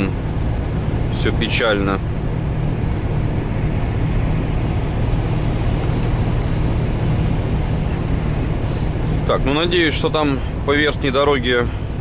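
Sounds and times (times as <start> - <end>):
road noise: 0.0 - 12.0
truck diesel engine drone: 0.0 - 12.0.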